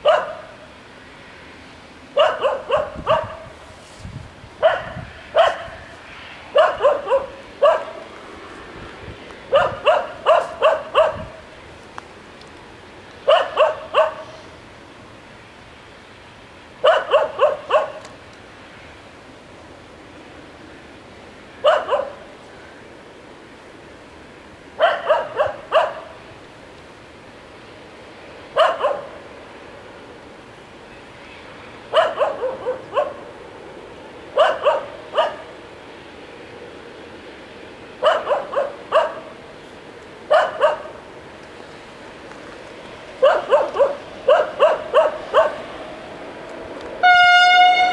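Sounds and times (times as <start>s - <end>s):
dog barking: 0.0s - 0.6s, 2.2s - 3.6s, 4.6s - 5.9s, 6.5s - 8.1s, 9.5s - 11.4s, 13.3s - 14.4s, 16.8s - 18.1s, 21.6s - 22.2s, 24.8s - 26.2s, 28.6s - 29.2s, 31.9s - 33.3s, 34.4s - 35.5s, 38.0s - 39.4s, 40.3s - 41.0s, 43.2s - 45.6s.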